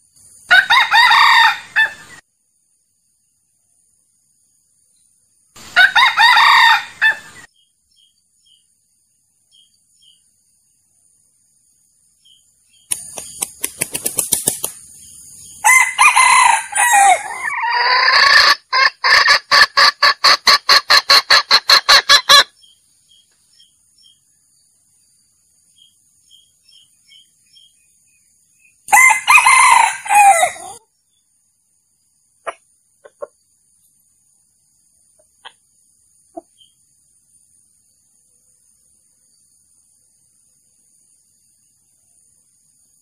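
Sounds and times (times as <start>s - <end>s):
rooster crowing: 0.5s - 2.1s, 5.8s - 7.4s, 15.6s - 18.6s, 28.9s - 30.8s
sharp bird calls: 12.2s - 24.3s
rapid clucking and cackling: 12.9s - 14.9s, 17.1s - 22.5s, 32.4s - 33.5s.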